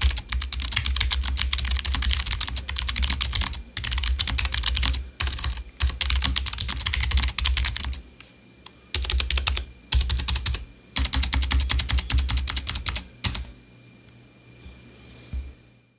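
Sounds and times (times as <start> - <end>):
clicky mechanical keyboard typing: 0.0 - 8.0, 8.9 - 13.5.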